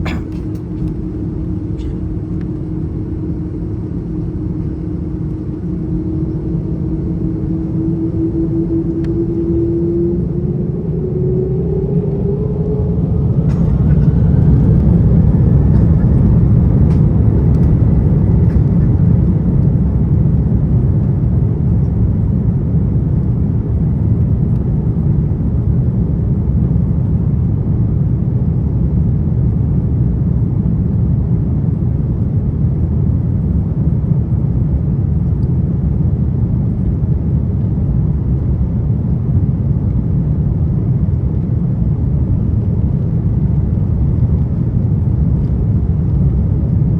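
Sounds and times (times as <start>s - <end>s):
rising engine whine: 0.0s - 27.8s
jet engines roaring in cabin: 0.0s - 46.9s.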